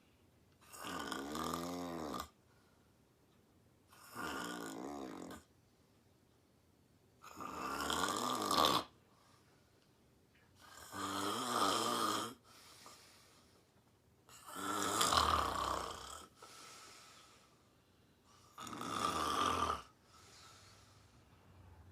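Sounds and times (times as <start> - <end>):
woman snoring: 0.6 - 2.4, 4.0 - 5.5, 7.2 - 8.9, 10.6 - 12.5, 14.3 - 16.4, 18.4 - 20.0.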